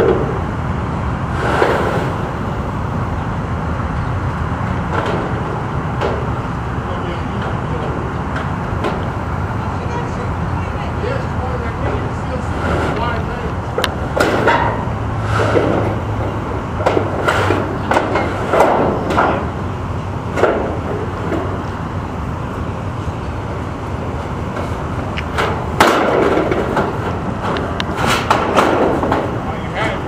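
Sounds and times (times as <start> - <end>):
low hum: 0.0 - 30.0
knocks and clatter on roof panels: 25.3 - 29.4.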